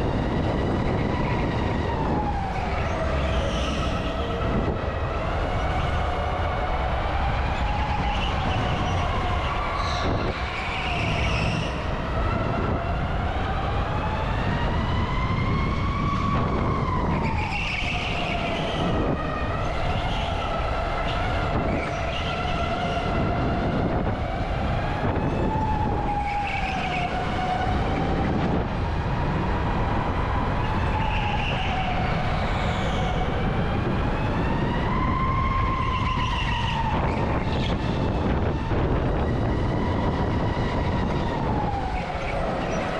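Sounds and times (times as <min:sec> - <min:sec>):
road and wind noise: 0:00.0 - 0:42.9.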